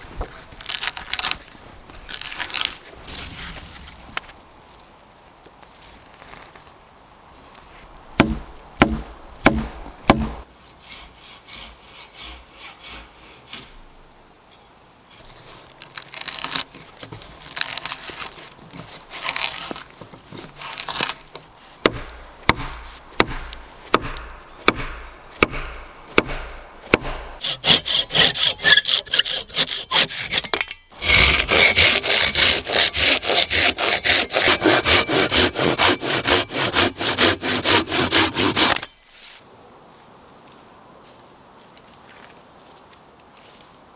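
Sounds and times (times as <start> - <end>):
sharp knocks: 8.2 - 10.4, 21.8 - 28.0
hand saw cutting wood: 8.2 - 13.8, 17.5 - 39.0.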